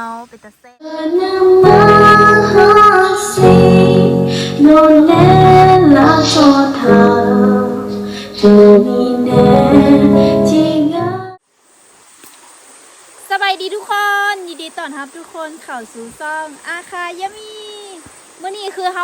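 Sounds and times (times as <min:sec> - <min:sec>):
woman singing: 0:00.8 - 0:11.4
instrumental backing: 0:01.1 - 0:11.4.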